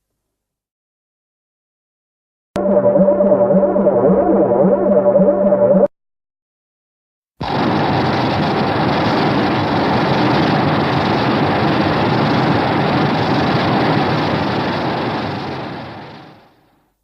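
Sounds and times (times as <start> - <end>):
loud steady rushing noise: 7.4 - 16.6.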